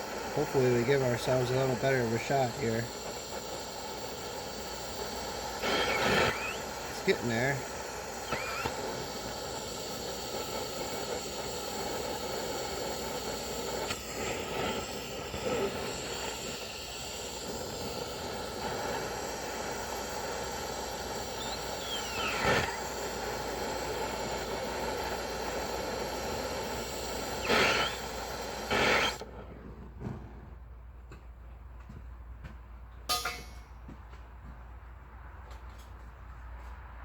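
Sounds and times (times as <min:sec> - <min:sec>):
gas torch flame hissing: 0:00.0 - 0:29.4
metal clanks and scrapes: 0:33.1 - 0:33.7.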